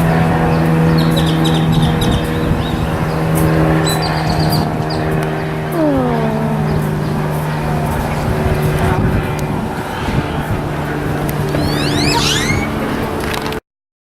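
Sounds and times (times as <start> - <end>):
steady motor hum: 0.0 - 13.5
small birds chirping: 11.6 - 12.8.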